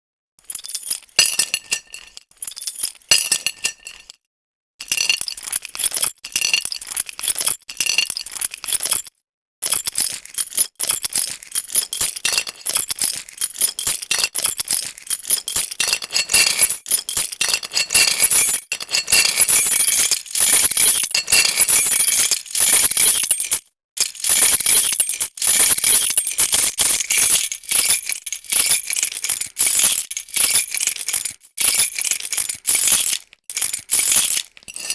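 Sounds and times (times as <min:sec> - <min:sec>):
metal keys jangling: 0:08.6 - 0:34.9.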